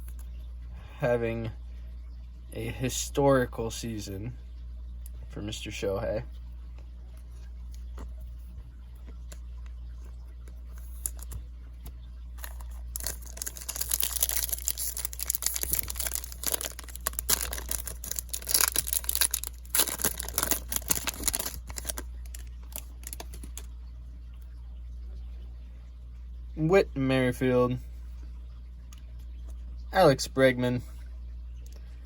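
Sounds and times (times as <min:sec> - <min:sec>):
foil wrapper tearing and crinkling: 0:12.4 - 0:23.7.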